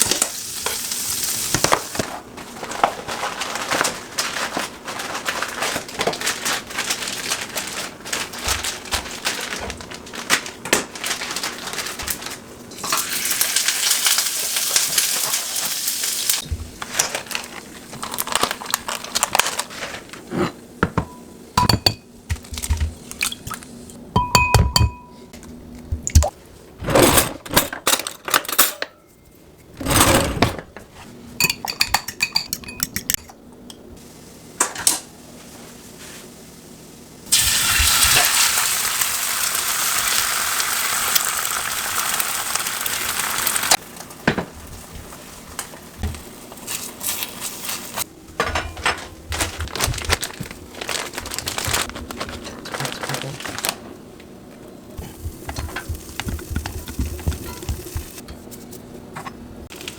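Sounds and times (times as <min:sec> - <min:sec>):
utensils and dishes clinking: 0:20.2 - 0:25.4, 0:26.2 - 0:30.7, 0:31.4 - 0:33.8, 0:48.3 - 0:53.7, 0:55.0 - 0:59.9.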